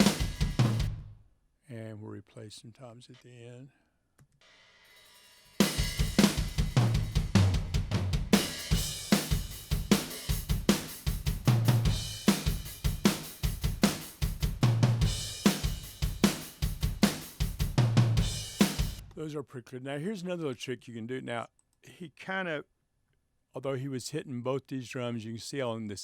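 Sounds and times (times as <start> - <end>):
drum kit groove: 0.0 - 1.2, 4.9 - 19.2.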